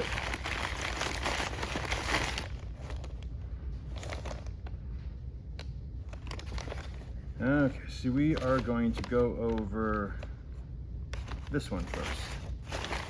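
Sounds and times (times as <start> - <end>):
packaging crinkling: 0.0 - 3.3, 6.1 - 7.2, 11.2 - 13.0
items clicking and tapping: 8.2 - 10.3.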